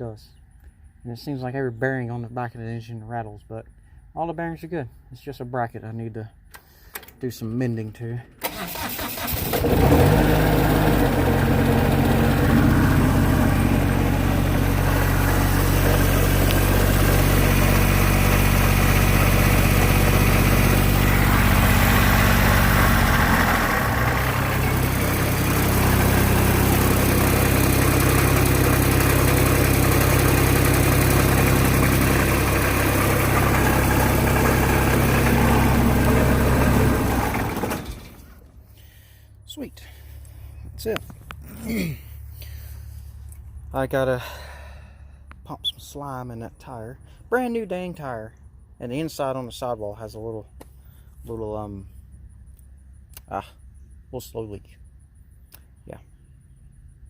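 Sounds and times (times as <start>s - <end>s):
diesel engine running: 8.4s - 45.4s.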